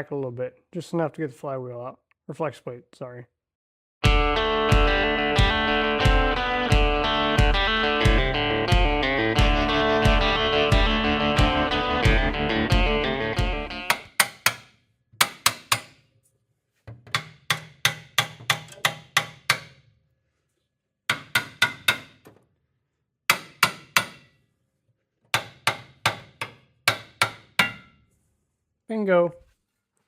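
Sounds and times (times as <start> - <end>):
hammer striking metal: 13.8 - 16.0, 17.1 - 19.8, 21.1 - 22.2, 23.3 - 24.3, 25.3 - 28.0.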